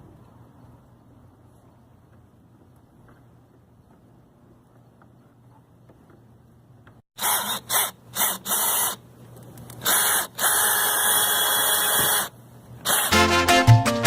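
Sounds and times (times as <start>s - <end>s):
power drill driving screws: 7.2s - 9.0s, 9.8s - 13.2s.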